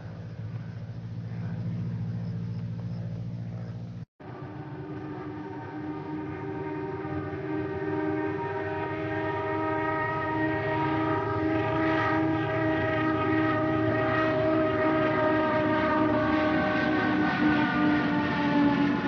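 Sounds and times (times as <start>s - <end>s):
moving train rumble: 0.0s - 19.0s
train horn blast: 4.2s - 19.0s.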